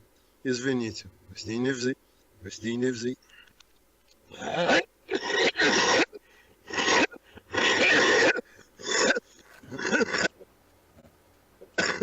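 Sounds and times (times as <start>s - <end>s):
man coughing: 6.8s - 10.3s, 11.8s - 12.0s.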